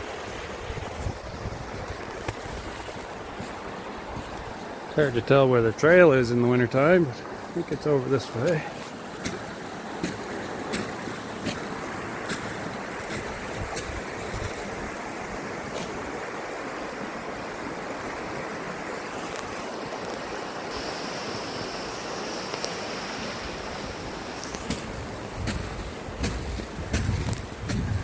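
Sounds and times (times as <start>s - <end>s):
faint ticks: 22.5s - 22.8s.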